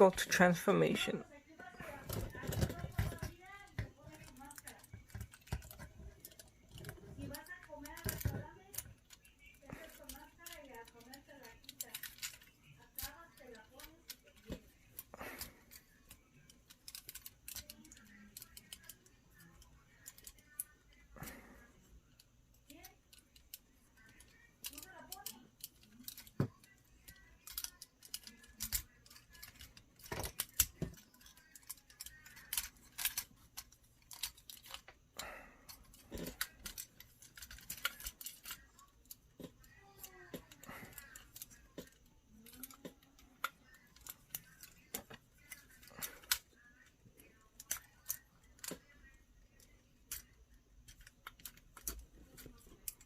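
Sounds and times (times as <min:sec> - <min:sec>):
plastic action figure clicking: 0:04.2 - 0:14.6, 0:22.7 - 0:35.0.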